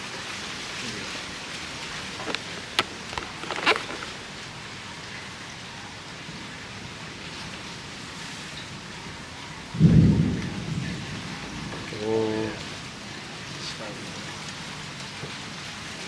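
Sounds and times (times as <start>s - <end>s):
light rain hissing: 6.6s - 16.0s.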